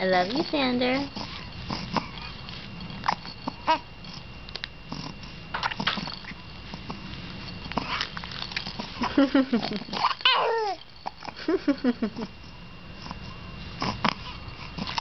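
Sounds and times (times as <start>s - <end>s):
baby squeaking and gasping: 10.0s - 10.8s.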